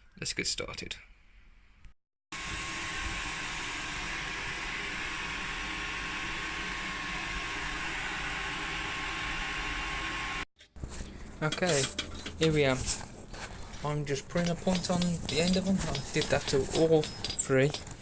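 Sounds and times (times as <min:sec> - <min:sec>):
faint high whine: 0:02.4 - 0:10.4
forge rushing noise: 0:02.4 - 0:10.4.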